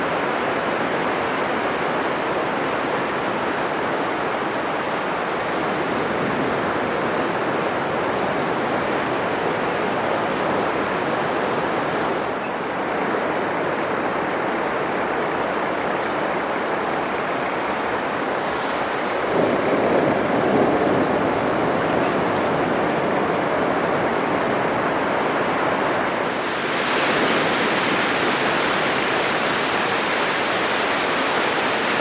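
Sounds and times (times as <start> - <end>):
surf breaking on beach: 4.6 - 32.0.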